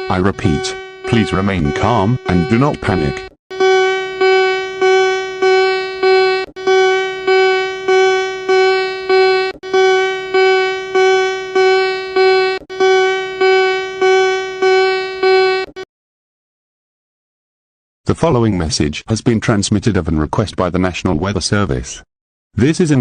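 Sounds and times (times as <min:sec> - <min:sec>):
pulsing alert tone: 0:00.0 - 0:15.8.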